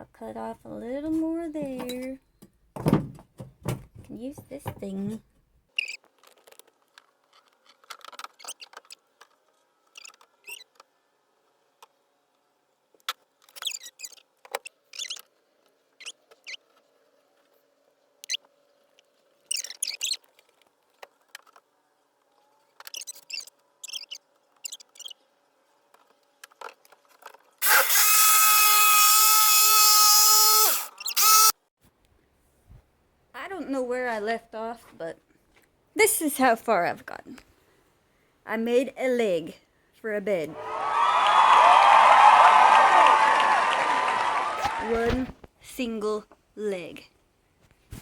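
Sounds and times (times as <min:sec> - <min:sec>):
power tool cutting wood: 0:27.6 - 0:31.6.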